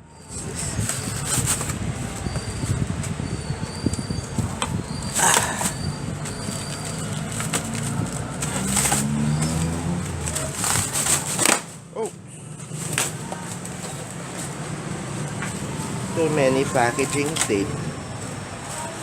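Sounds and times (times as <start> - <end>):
plastic wrap crackling: 4.5 - 11.9.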